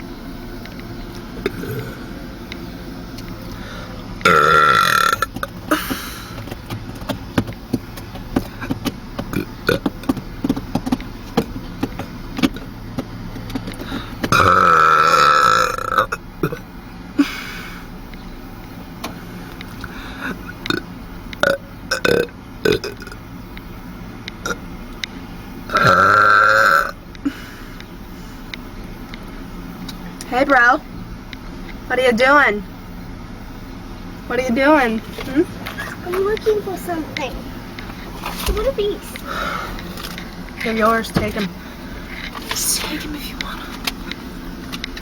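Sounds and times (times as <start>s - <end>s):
person burping: 1.4s - 2.2s, 4.2s - 6.1s, 14.4s - 16.6s, 25.7s - 27.0s.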